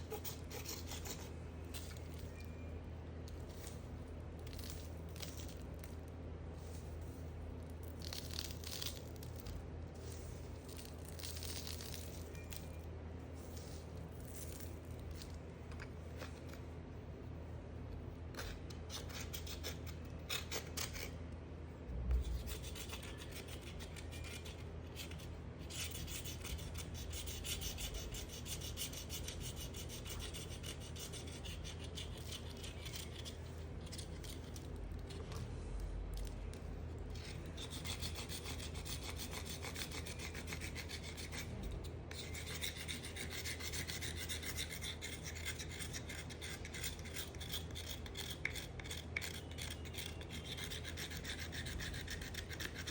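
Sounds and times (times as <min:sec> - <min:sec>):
knife scraping soap: 0:00.0 - 0:02.7, 0:18.3 - 0:21.2, 0:22.2 - 0:35.2, 0:37.1 - 0:52.9.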